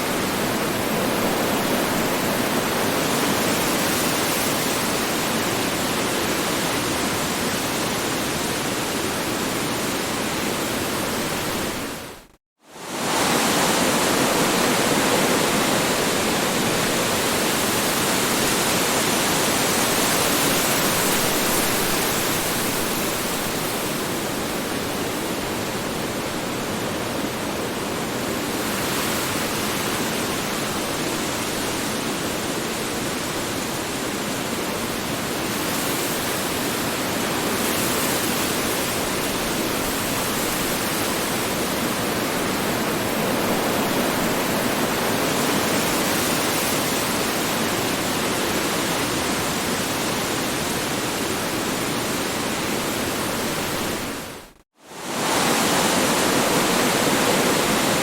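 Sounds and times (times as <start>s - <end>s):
strong wind blowing: 37.3s - 58.0s.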